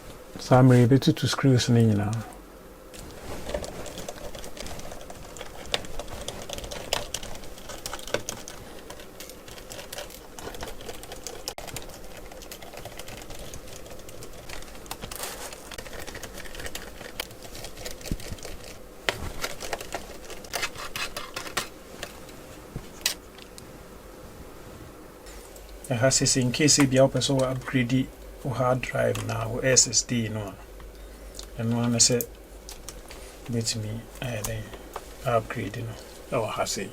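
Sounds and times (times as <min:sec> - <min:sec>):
small clicks and rattles: 0:03.4 - 0:22.4.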